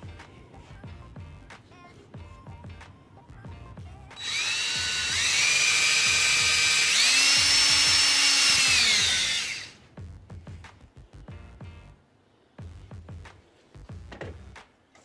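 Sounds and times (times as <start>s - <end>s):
power drill whining: 4.2s - 9.8s.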